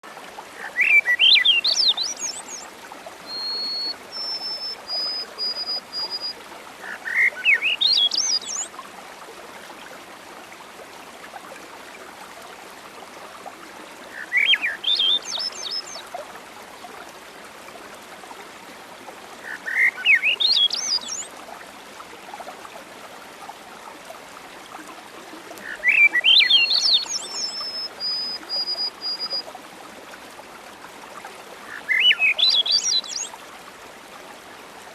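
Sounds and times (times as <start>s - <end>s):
songbird singing: 0.6s - 8.7s, 14.1s - 16.2s, 19.4s - 21.3s, 25.6s - 29.4s, 31.7s - 33.3s.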